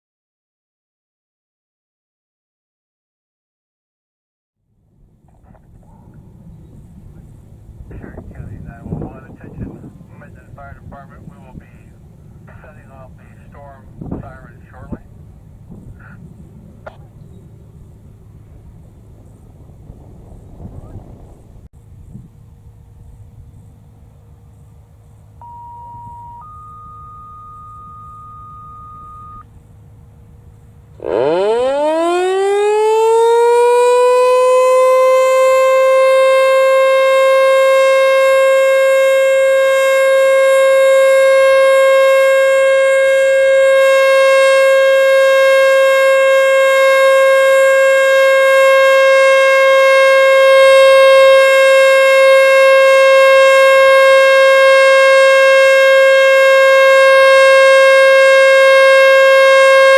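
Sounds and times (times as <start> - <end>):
steady beep tones: 25.4 - 29.4
warning siren winding up: 25.4 - 29.5, 31.0 - 59.9.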